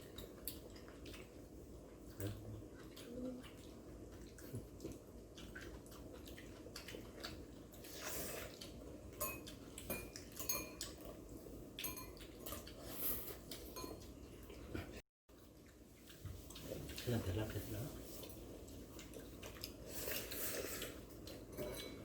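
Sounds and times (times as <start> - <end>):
utensils clinking against bowls: 9.2 - 11.0, 13.7 - 14.0, 21.5 - 22.0.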